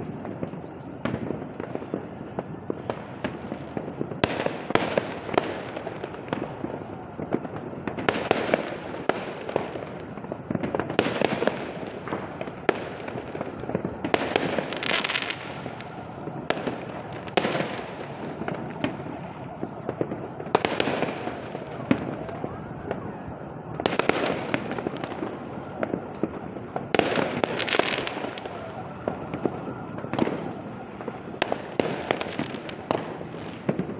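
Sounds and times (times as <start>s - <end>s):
crackling rumble of distant bangs: 0.0s - 33.9s.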